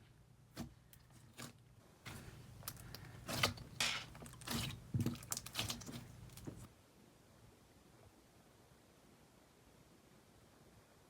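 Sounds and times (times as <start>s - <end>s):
slime squishing with sticky pops: 2.1s - 6.7s.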